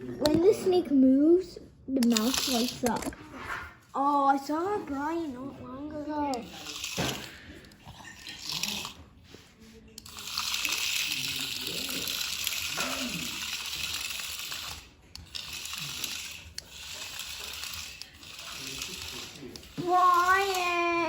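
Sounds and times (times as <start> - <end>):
toy motor and gears whirring: 2.0 - 3.3, 4.4 - 9.1, 9.9 - 21.0.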